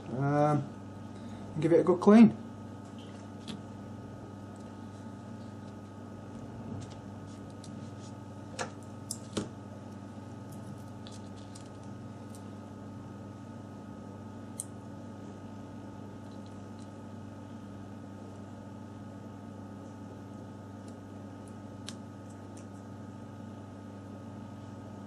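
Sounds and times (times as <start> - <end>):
electrical hum: 0.0 - 25.0.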